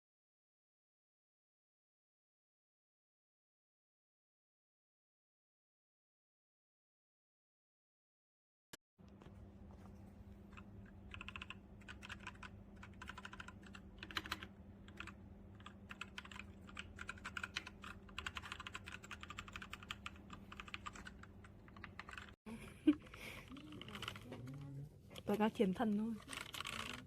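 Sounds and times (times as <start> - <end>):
mechanical keyboard typing: 10.5 - 22.4, 23.4 - 24.4, 25.8 - 27.0.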